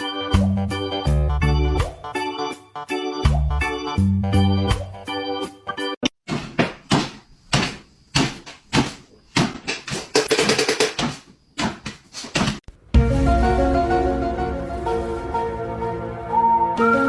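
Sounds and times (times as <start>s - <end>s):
music: 0.0s - 6.0s, 12.7s - 17.0s
knocks and thuds: 6.2s - 12.7s.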